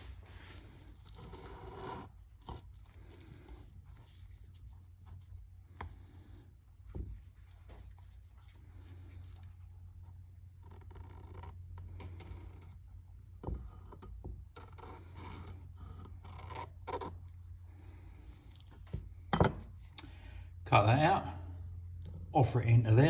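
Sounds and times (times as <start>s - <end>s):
light scrapes and rustles: 0.0s - 12.8s
steady low hum: 0.0s - 23.0s.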